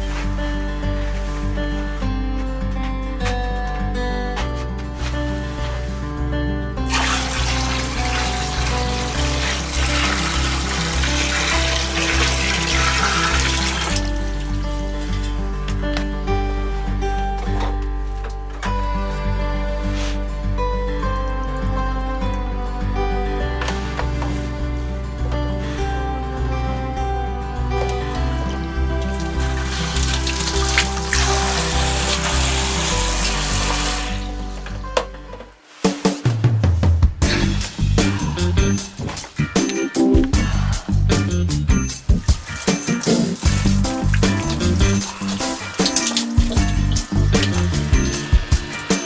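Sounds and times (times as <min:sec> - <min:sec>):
background music with bass line: 0:00.0 - 0:49.0
running water: 0:06.9 - 0:15.4, 0:29.0 - 0:34.9, 0:41.9 - 0:49.0.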